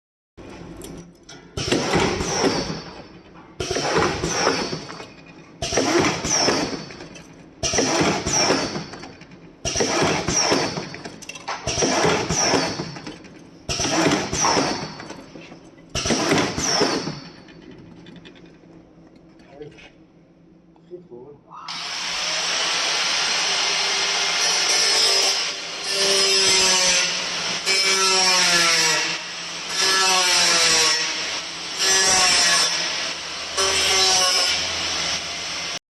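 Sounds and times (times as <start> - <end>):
skewering machine clatter and whine: 1.1 - 20.7.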